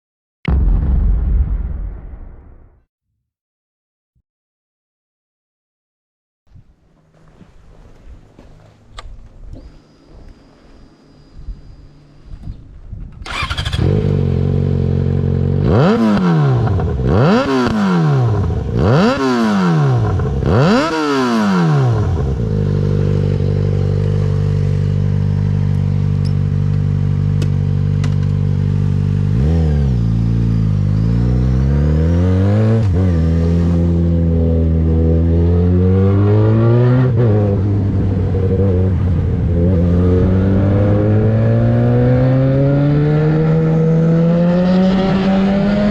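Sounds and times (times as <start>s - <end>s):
motorcycle engine revving and idling: 7.0s - 45.9s
motorcycle accelerating through gears: 13.2s - 45.9s.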